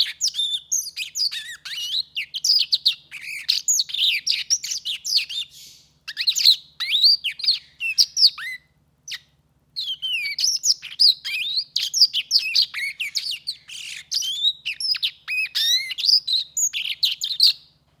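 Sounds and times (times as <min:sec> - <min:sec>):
canary singing: 0:00.0 - 0:17.8.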